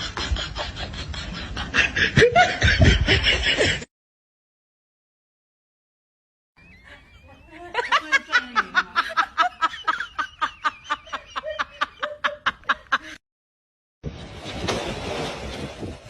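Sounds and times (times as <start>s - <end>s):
person laughing: 0.0s - 3.9s, 6.8s - 13.2s.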